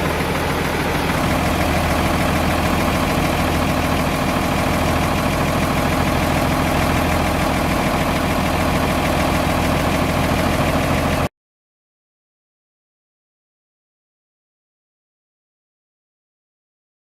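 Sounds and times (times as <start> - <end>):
tractor diesel engine idling: 0.0 - 11.3.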